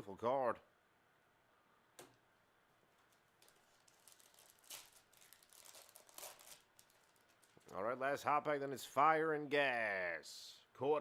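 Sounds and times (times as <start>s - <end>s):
trading cards and packaging rustling: 3.0s - 7.9s.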